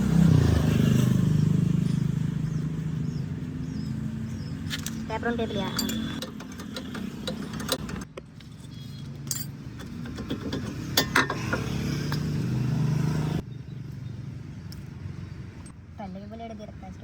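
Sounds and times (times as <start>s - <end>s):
low vehicle engine hum: 0.0s - 17.0s
metal tools clinking: 4.7s - 8.0s, 9.1s - 12.3s.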